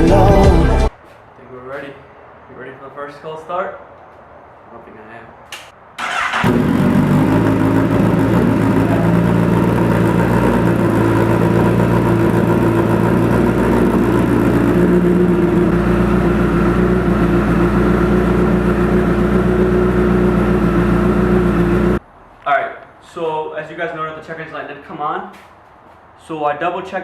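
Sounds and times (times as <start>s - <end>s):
motorcycle engine idling: 6.1s - 22.0s.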